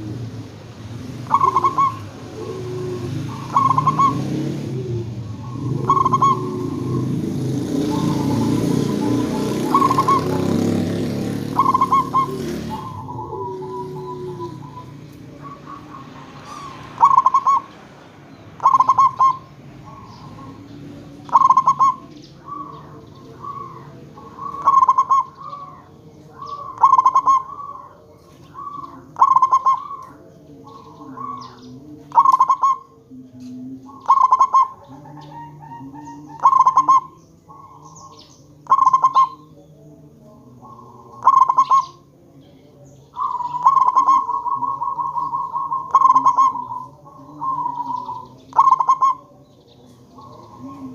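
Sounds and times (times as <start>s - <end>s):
soft low cooing: 0.0s - 10.9s, 11.6s - 17.8s
dove cooing: 0.0s - 50.9s.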